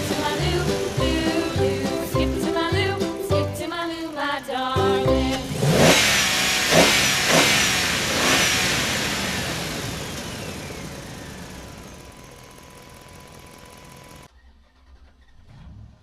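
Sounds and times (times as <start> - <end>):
cartoon engine revving: 0.0 - 12.4.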